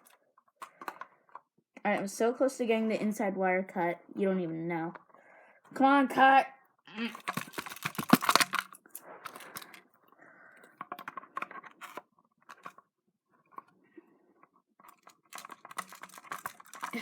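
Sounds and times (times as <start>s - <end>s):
scissors crunching plastic cord: 7.1s - 9.8s, 14.9s - 17.0s.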